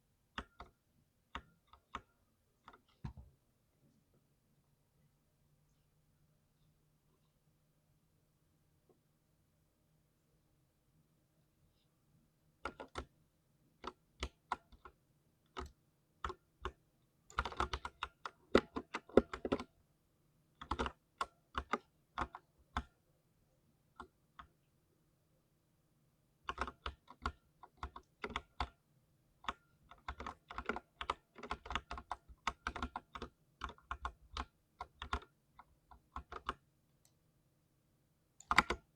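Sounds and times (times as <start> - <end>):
keyboard typing: 13.8 - 19.7, 29.4 - 36.6, 38.4 - 38.9.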